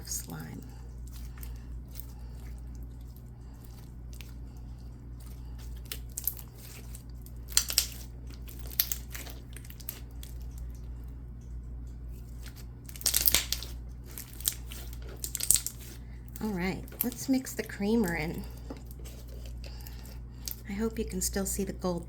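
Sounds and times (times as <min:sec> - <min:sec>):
slime clicking and popping: 0:07.4 - 0:10.2, 0:12.9 - 0:16.0.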